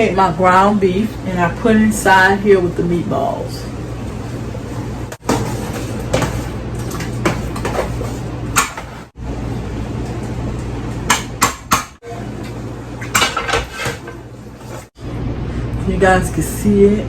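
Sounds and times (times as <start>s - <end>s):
utensil scraping a pot: 3.8s - 9.2s, 12.4s - 15.0s.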